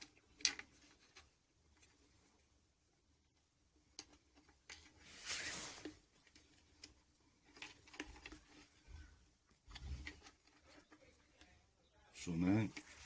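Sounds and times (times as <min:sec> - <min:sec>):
brief rustle or scrape: 0:04.8 - 0:06.0.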